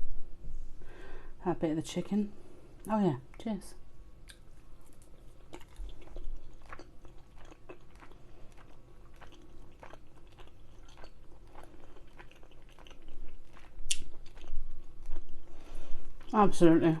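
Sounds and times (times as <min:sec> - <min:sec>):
person chewing food: 0:04.2 - 0:16.5.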